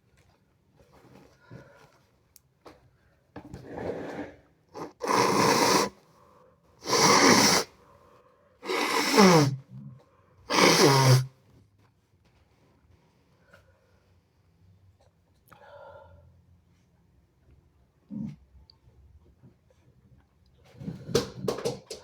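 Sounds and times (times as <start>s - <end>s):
person sneezing: 4.8s - 5.9s, 6.8s - 7.7s, 8.6s - 9.6s, 10.5s - 11.3s
drawn-in breath: 4.8s - 9.6s, 10.5s - 11.3s.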